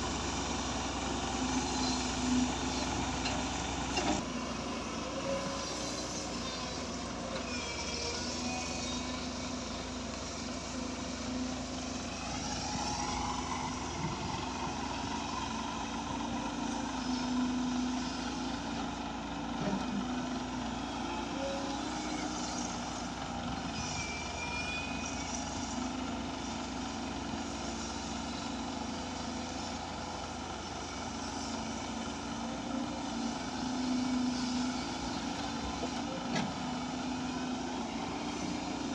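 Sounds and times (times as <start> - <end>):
diesel engine of heavy machine: 0.0 - 38.9
high squeals: 23.6 - 25.8.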